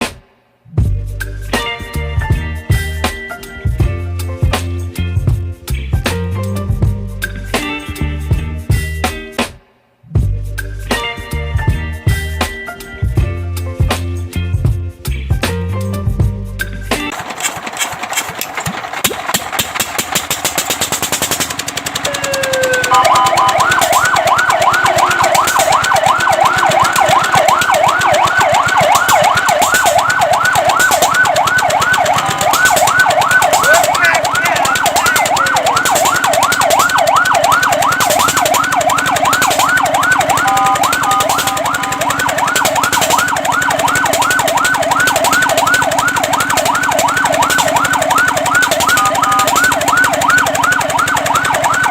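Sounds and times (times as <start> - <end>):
engine running: 17.1 - 51.9
fire truck siren yelping: 17.1 - 51.9.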